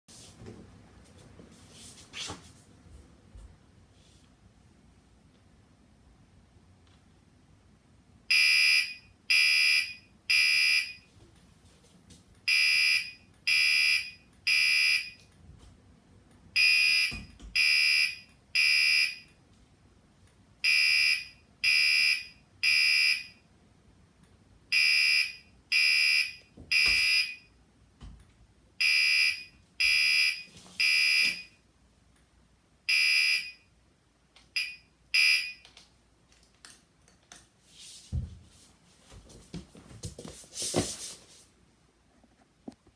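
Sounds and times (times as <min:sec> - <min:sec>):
fire alarm horn beeps: 0:08.3 - 0:11.1, 0:12.5 - 0:15.3, 0:16.6 - 0:19.3, 0:20.6 - 0:23.4, 0:24.7 - 0:27.6, 0:28.8 - 0:31.6, 0:32.9 - 0:33.7, 0:34.6 - 0:35.6.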